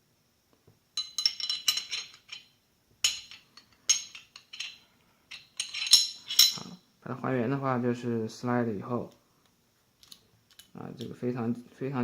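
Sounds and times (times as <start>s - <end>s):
pistol parts clicking and clinking: 1.0s - 6.8s, 10.0s - 10.8s.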